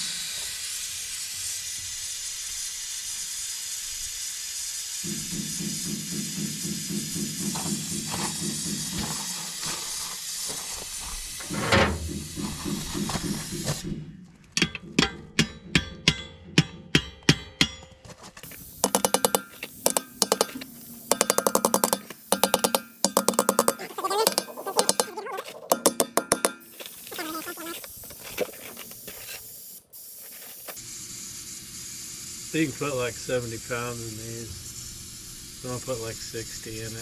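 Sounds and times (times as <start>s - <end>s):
compressed air hissing into tire: 0.0s - 14.1s, 18.4s - 37.0s
sharp clicks: 18.4s - 27.2s.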